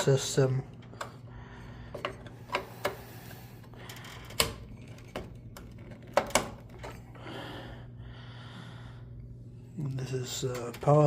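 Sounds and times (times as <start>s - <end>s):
clicks and knocks of computer parts: 3.8s - 7.0s.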